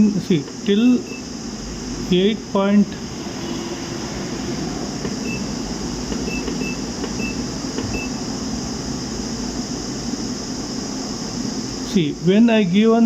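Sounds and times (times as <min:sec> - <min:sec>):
fan humming: 0:00.0 - 0:13.0
short high electronic beeps: 0:05.2 - 0:05.5, 0:06.3 - 0:08.2.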